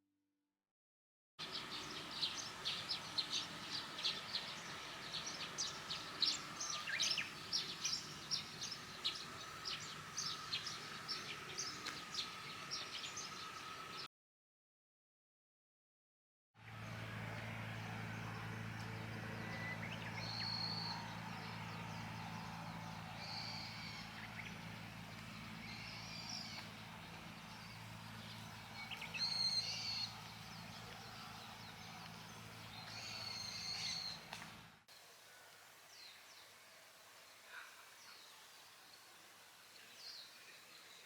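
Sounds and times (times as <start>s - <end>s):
birds chirping: 1.4s - 14.1s, 16.7s - 34.8s
steady low hum: 1.4s - 14.1s, 16.6s - 35.8s.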